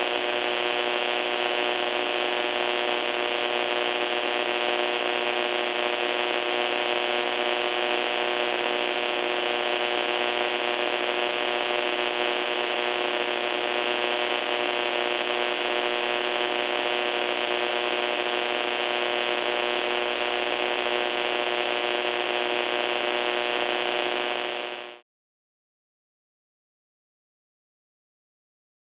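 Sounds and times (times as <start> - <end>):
buzzing hum: 0.0 - 25.0
radio static hiss: 0.0 - 25.0.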